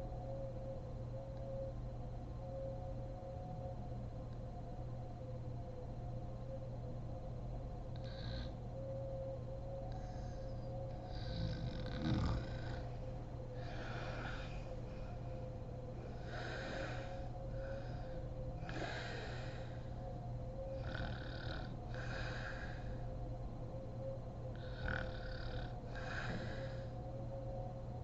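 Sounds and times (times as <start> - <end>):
steady low hum: 0.0 - 28.0
woman snoring: 8.0 - 8.6, 11.1 - 12.9, 13.6 - 14.6, 16.2 - 17.2, 18.6 - 19.6, 20.8 - 22.8, 24.6 - 26.9.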